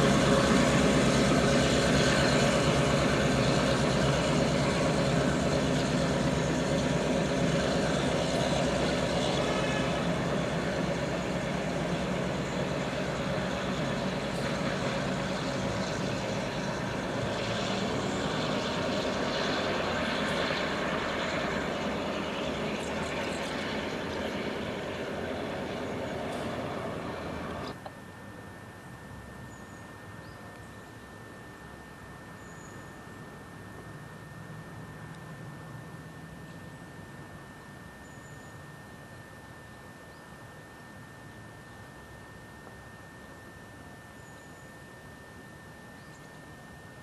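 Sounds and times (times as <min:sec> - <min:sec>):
diesel locomotive throbbing: 0:00.0 - 0:27.8.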